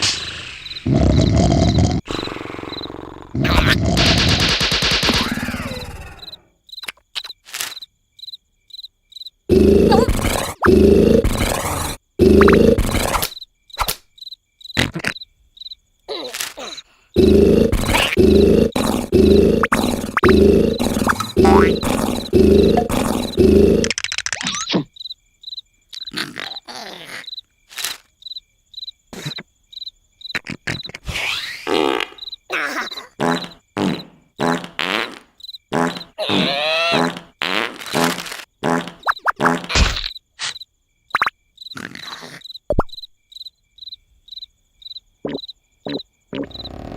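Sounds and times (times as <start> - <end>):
cartoon snore: 0.0 - 4.5, 9.5 - 13.3, 16.6 - 24.0
cartoon cricket chirping: 0.0 - 46.9
raspy comic vocal noises: 0.8 - 2.1, 3.3 - 7.0, 9.5 - 13.9, 14.8 - 15.2, 16.1 - 24.9, 26.0 - 27.3, 32.5 - 34.7, 35.8 - 37.3, 41.8 - 42.4.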